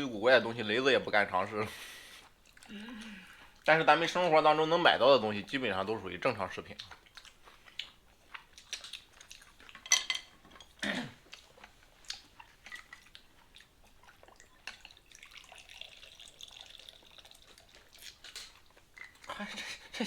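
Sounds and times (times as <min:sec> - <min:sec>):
tableware clinking: 0:09.8 - 0:10.8
liquor pouring into glass: 0:14.8 - 0:17.8.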